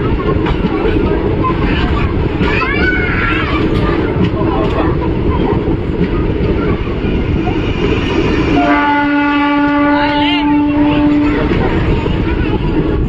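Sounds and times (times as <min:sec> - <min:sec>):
train rumbling: 0:00.0 - 0:13.0
train horn blast: 0:08.5 - 0:11.6.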